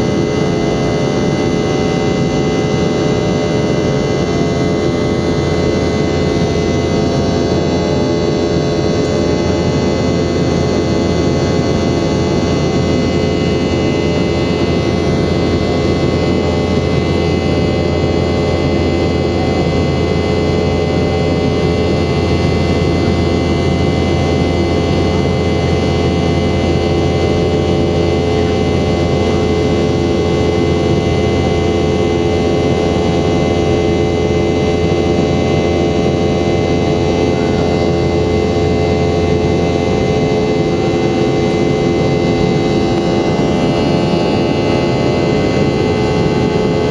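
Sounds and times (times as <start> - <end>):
jet engines running: 0.0 - 46.9.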